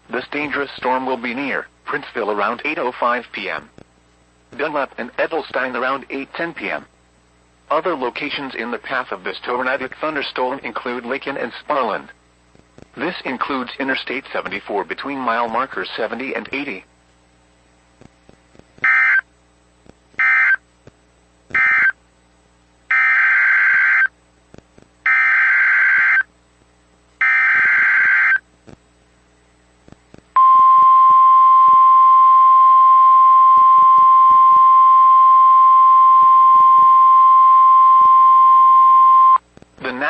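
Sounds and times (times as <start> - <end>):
steady warning alarm tone: 18.8 - 19.2, 20.2 - 20.6, 21.6 - 22.0, 22.9 - 24.1, 25.1 - 26.3, 27.2 - 28.4.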